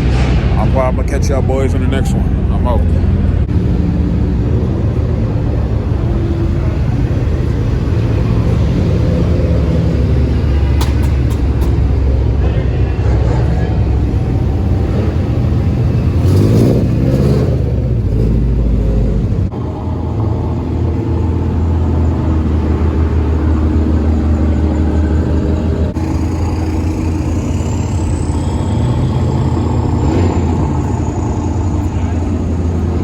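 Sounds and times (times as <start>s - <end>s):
car engines rumbling and revving: 0.0s - 33.0s.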